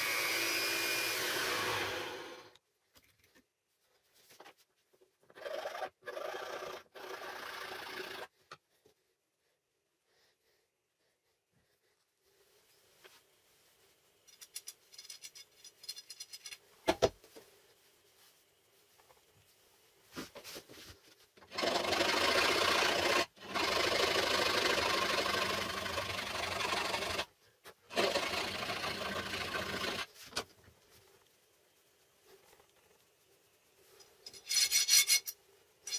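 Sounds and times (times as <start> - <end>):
power tool working wood: 0.0 - 2.6.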